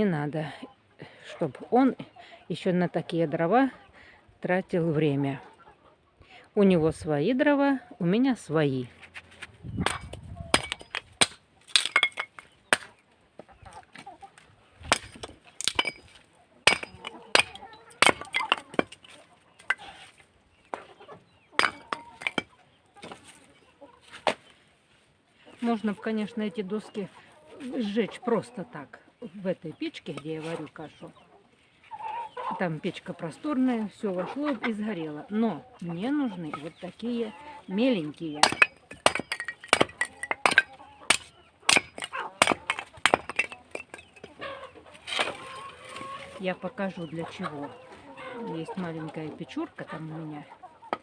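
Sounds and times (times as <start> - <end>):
wooden boards knocking together: 14.9 - 19.9, 21.6 - 23.3, 38.4 - 44.4.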